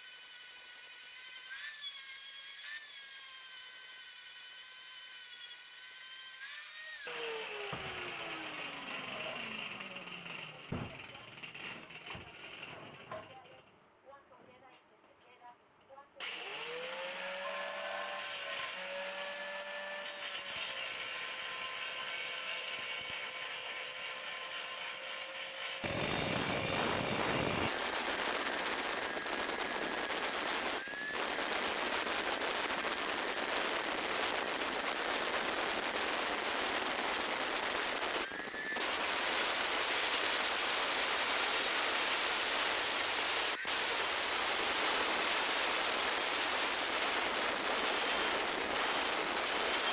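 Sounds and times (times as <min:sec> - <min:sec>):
power tool whining: 0:06.3 - 0:13.2, 0:16.2 - 0:23.6, 0:24.9 - 0:49.9
harsh hiss of tool cutting: 0:25.8 - 0:49.9.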